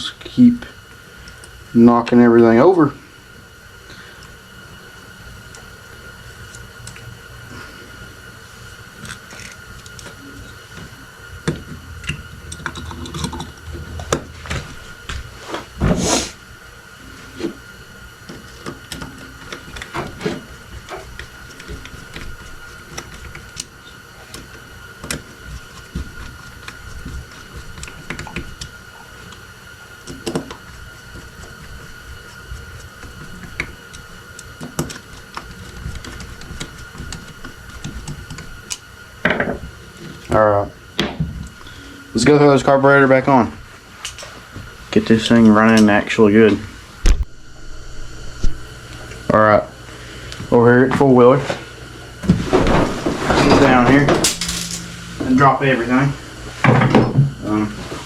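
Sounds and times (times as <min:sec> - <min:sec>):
faint steady high tone: 0:41.7 - 0:42.2
small parts and tools clinking: 0:53.4 - 0:55.0.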